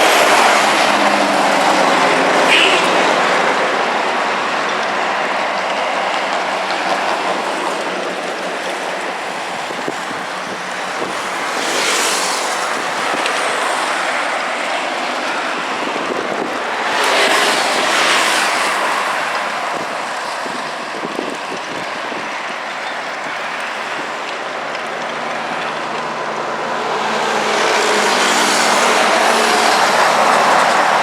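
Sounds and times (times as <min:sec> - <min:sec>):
vehicle passing close: 0:00.0 - 0:04.8
street traffic noise: 0:00.0 - 0:31.0.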